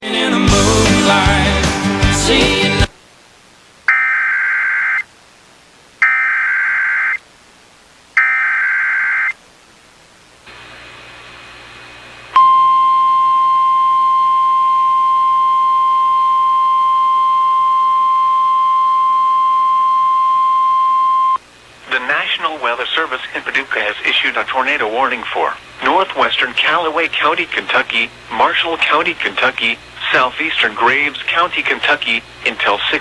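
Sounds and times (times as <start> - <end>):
steady single-pitch alarm tone: 3.9 - 5.1, 12.4 - 21.4.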